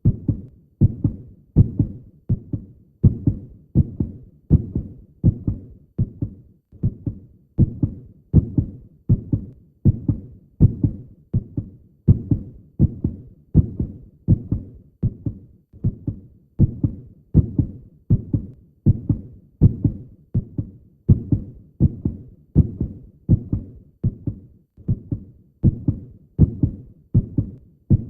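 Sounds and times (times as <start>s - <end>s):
heartbeat double thump: 0.0s - 28.0s.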